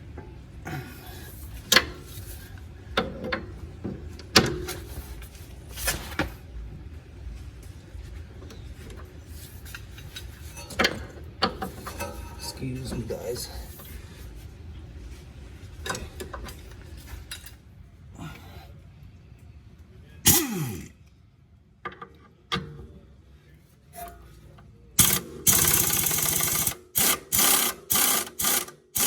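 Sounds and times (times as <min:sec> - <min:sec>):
impact wrench running: 0:20.3 - 0:21.0, 0:25.0 - 0:29.0.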